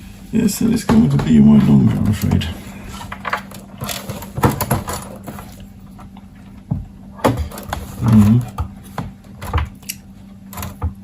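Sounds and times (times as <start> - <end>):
faint steady hum: 0.0 - 11.0
clicks and knocks of wires: 3.1 - 11.0.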